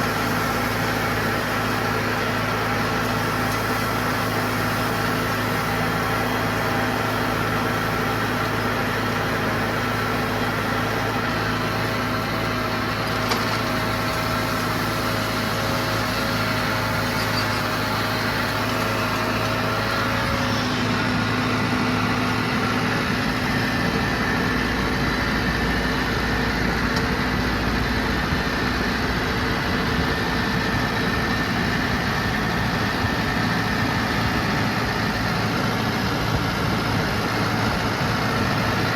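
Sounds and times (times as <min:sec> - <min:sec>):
diesel tractor engine running: 0:00.0 - 0:38.9.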